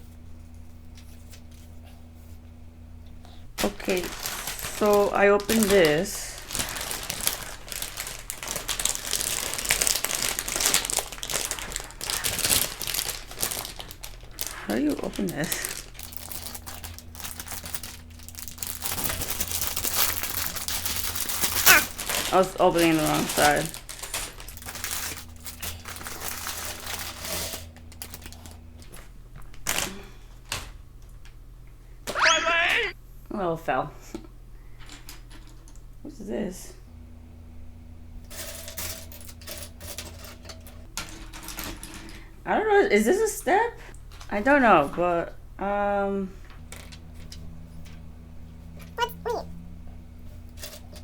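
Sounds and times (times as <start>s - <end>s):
plastic bag crinkling: 3.6s - 27.4s, 32.2s - 32.9s.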